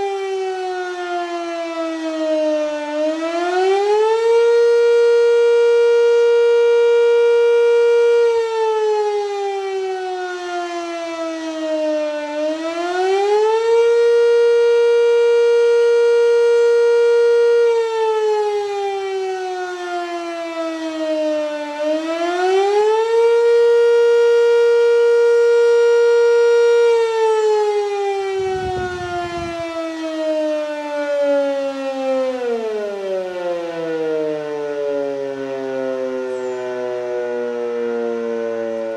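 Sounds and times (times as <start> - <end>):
electromechanical warning siren: 0.0 - 38.9.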